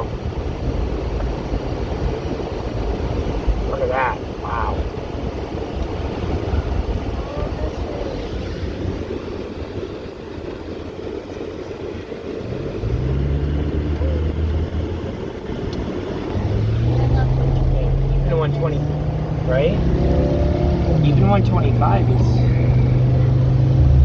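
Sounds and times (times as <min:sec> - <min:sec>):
diesel engine drone: 0:00.0 - 0:24.0
road and tyre rumble: 0:00.0 - 0:24.0.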